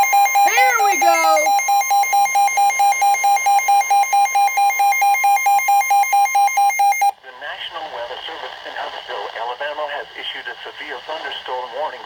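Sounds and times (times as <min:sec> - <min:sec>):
steady warning tone: 0:00.0 - 0:07.0
pulsed alarm beep: 0:00.0 - 0:07.1.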